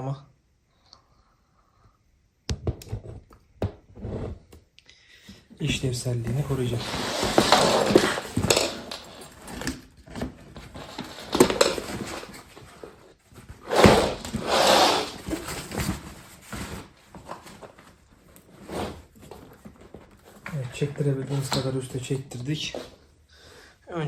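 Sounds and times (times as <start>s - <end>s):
plastic scraping and rubbing: 5.6s - 23.0s.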